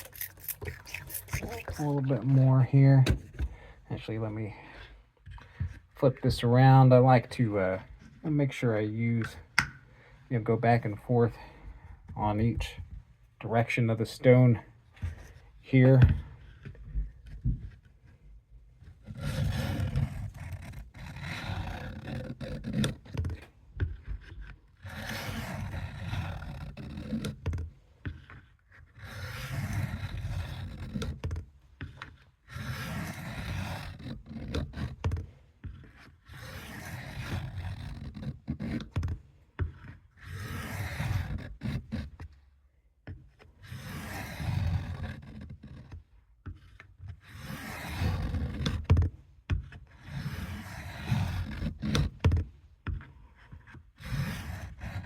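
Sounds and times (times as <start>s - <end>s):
knife scraping on whetstone: 0.0s - 2.0s.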